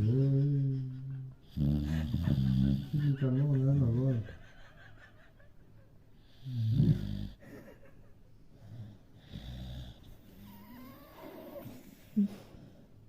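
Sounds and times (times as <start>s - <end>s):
small dog snoring: 1.5s - 3.0s, 6.4s - 7.4s, 8.7s - 12.1s.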